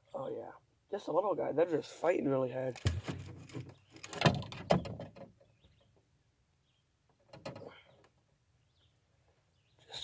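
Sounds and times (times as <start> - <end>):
handling knocks: 2.8 - 5.2
faint bird chirps: 4.8 - 6.0, 7.6 - 10.0.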